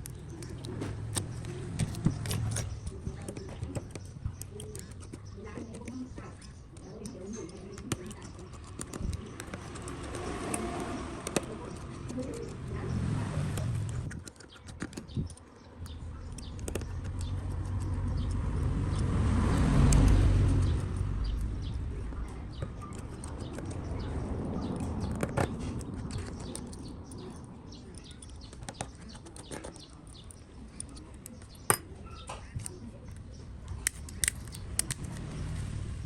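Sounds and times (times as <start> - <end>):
road vehicle passing: 0.0 - 14.1, 15.7 - 36.0
small scattered clicks: 13.6 - 31.7.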